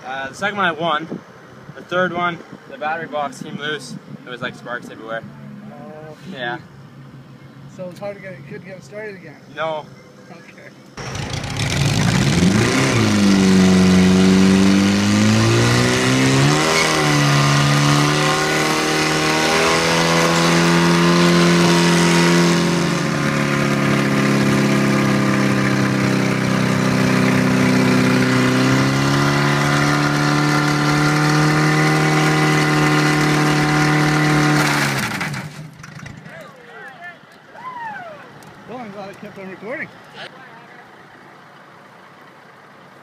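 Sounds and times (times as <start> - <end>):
car engine revving: 11.0 - 36.3.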